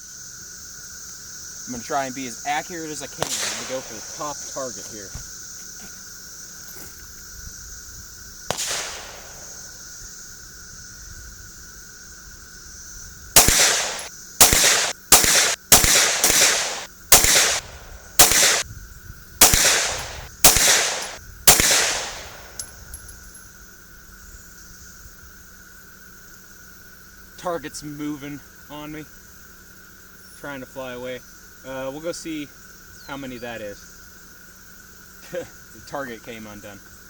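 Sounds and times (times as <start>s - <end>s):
insect chorus: 0.0s - 37.0s
pistol shots with echo: 3.1s - 4.8s, 8.5s - 9.8s, 13.4s - 18.6s, 19.4s - 22.8s
faint gunshot: 3.2s - 4.4s, 8.5s - 9.7s, 13.4s - 18.6s, 19.4s - 22.6s.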